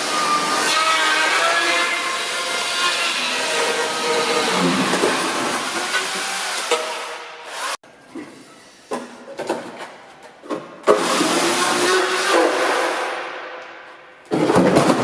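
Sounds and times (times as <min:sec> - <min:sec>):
chainsaw cutting: 0:03.7 - 0:06.7, 0:07.4 - 0:07.8.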